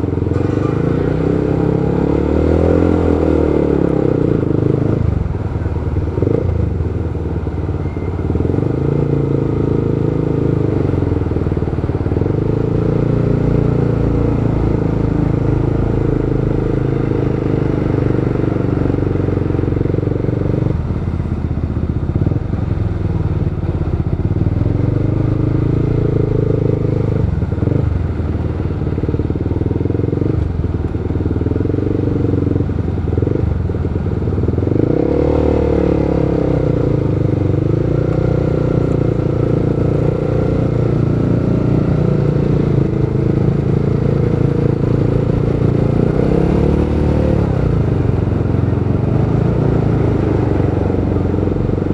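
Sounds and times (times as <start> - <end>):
motorcycle engine running: 0.0 - 51.9
road and wind noise: 0.0 - 51.9.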